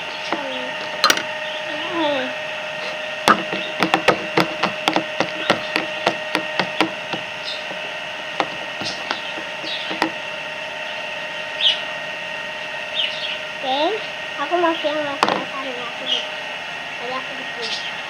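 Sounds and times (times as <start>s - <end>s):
sharp taps or clicks: 3.3s - 10.2s.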